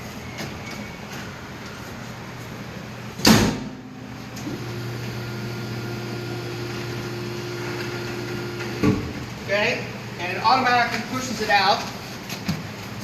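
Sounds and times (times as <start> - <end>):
hydraulic pump motor humming: 4.2 - 9.2.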